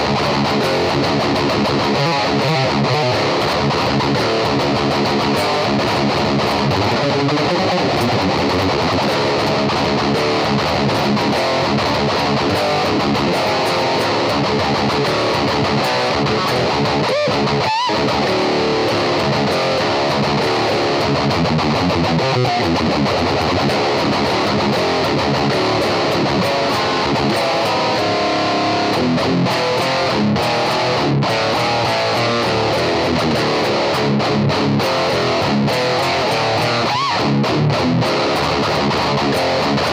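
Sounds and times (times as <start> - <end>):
heavy metal electric guitar riffing: 0.0 - 39.9.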